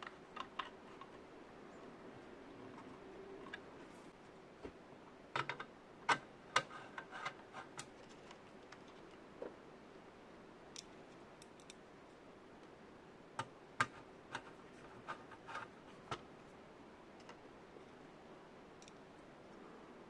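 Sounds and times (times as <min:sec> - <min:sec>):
sharp clicks and light knocks: 0:00.0 - 0:01.2, 0:04.6 - 0:09.6
faint steady hum: 0:00.0 - 0:20.0.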